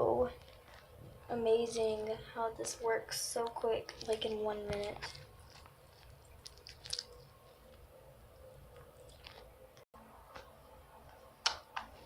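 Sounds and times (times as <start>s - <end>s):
slime squelching and popping: 3.4s - 7.4s.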